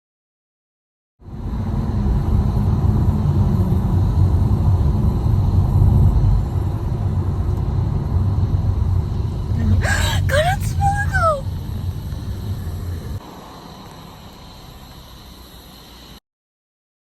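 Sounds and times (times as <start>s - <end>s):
loud steady low rumble: 1.2s - 13.2s.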